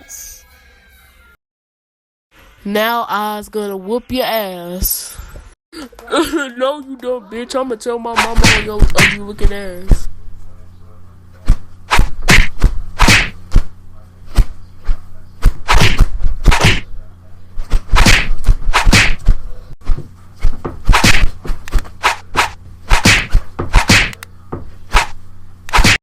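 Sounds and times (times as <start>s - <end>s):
whip swishes and smacks: 8.2s - 9.2s, 11.5s - 13.7s, 14.3s - 16.8s, 17.7s - 19.4s, 20.4s - 24.2s, 24.9s - 26.0s.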